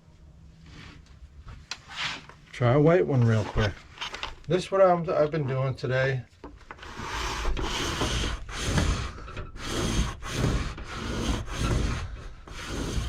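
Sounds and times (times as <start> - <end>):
blade scraping wire insulation: 6.6 - 13.0.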